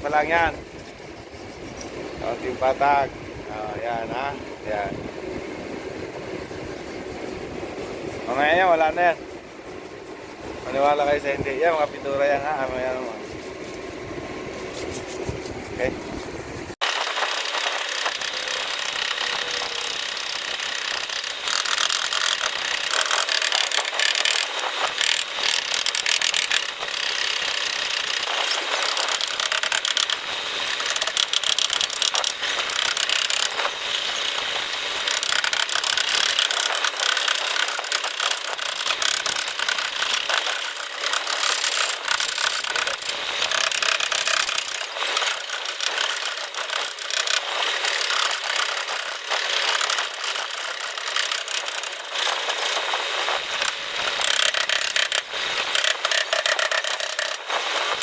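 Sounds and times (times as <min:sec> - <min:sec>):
fine rapid clicks: 0:16.8 - 0:58.0
hand tool scraping metal panel: 0:17.4 - 0:58.0.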